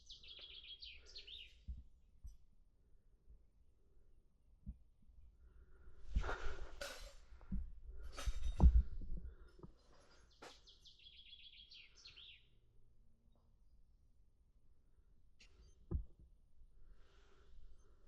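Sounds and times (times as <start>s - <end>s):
songbird trilling: 0.0s - 1.5s
rustling and knocking: 6.7s - 9.3s.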